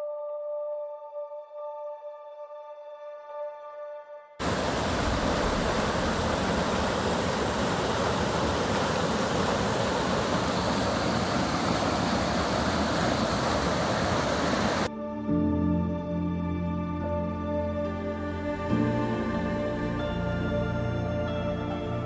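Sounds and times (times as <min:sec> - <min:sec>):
heavy rain falling: 0:04.4 - 0:14.9
ambient music chord: 0:14.9 - 0:22.0.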